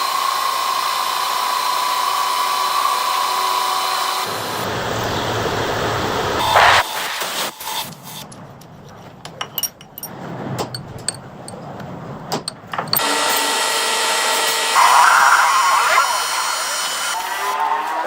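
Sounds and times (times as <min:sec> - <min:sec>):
sharp clicks and knocks: 0:07.9 - 0:13.7
power tool whining: 0:12.8 - 0:18.0.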